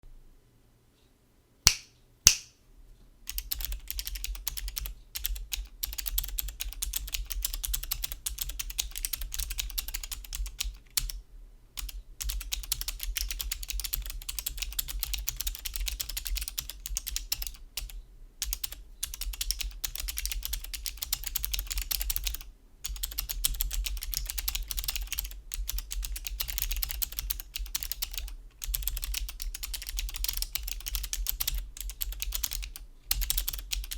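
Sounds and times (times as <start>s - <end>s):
sharp single clicks: 1.7s - 2.6s
fast typing on mechanical keyboard: 3.3s - 11.2s, 11.8s - 33.9s.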